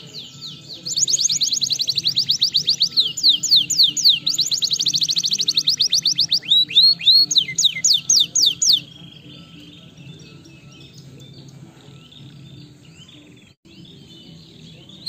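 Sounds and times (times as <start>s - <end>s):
canary singing trills: 0.0s - 15.0s.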